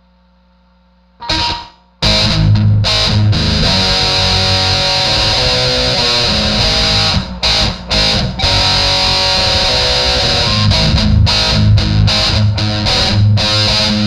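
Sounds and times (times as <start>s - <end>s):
amplifier hum: 0.0s - 14.0s
distorted electric guitar playing: 1.2s - 14.0s.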